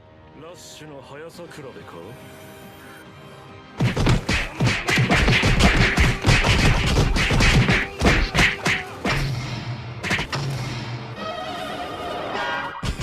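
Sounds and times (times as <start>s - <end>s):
cartoon whacks and bonks: 3.8s - 9.4s, 10.0s - 10.8s, 12.8s - 13.0s.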